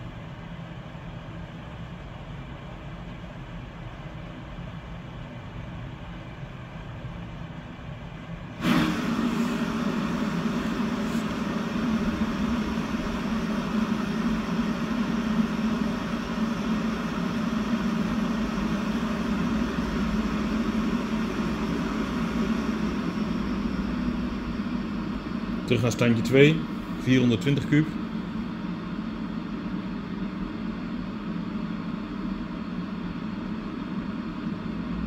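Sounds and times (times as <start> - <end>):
duct fan air rush: 0.0 - 35.0.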